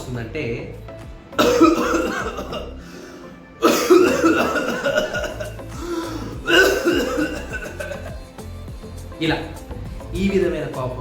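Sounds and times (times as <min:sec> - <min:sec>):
person coughing: 0:01.4 - 0:02.9, 0:03.6 - 0:08.2.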